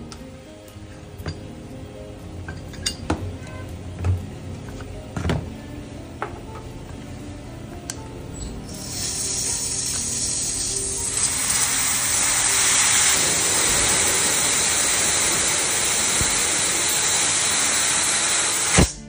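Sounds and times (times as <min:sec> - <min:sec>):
pressurised jet hissing: 0:08.7 - 0:19.0.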